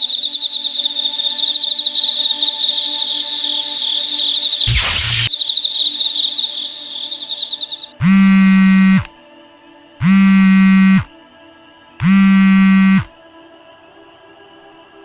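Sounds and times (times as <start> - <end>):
phone vibrating buzzes: 8.0 - 9.1, 10.0 - 11.1, 12.0 - 13.1.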